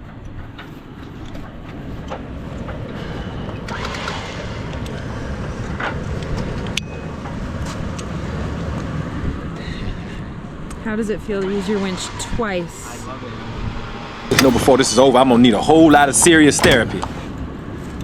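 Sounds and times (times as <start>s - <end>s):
vehicle engine running: 0.0s - 18.0s.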